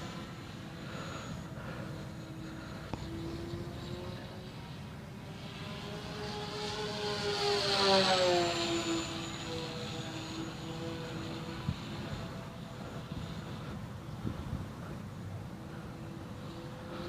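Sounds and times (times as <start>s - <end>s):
rc plane propellers whining: 0.0s - 17.0s
wind rumbling on microphone: 11.1s - 17.0s.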